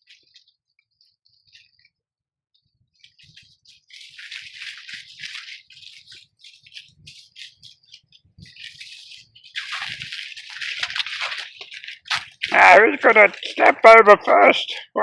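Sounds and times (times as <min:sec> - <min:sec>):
dry rustling and rattling: 0:03.1 - 0:15.0.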